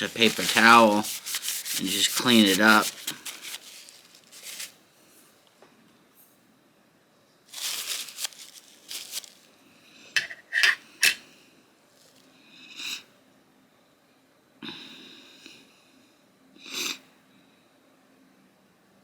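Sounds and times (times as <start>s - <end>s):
paper towel wiping knife: 0.0s - 4.7s.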